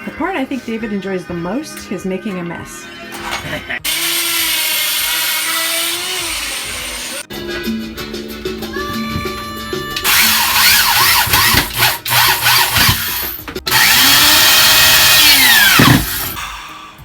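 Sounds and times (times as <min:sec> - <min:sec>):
power tool whining on wood: 0:03.3 - 0:07.3, 0:10.0 - 0:16.4.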